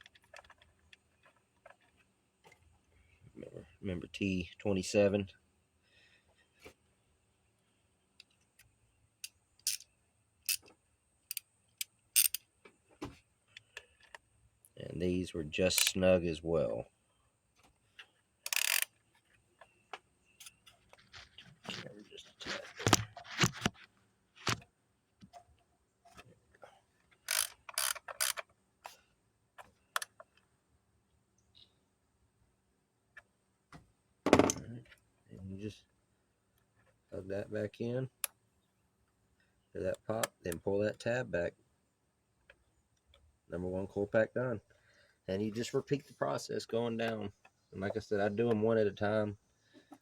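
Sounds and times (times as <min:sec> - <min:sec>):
ratchet clicking: 0:09.2 - 0:09.8, 0:12.2 - 0:12.4, 0:18.5 - 0:18.9, 0:27.2 - 0:28.4
tool scraping against bolt: 0:27.2 - 0:28.4.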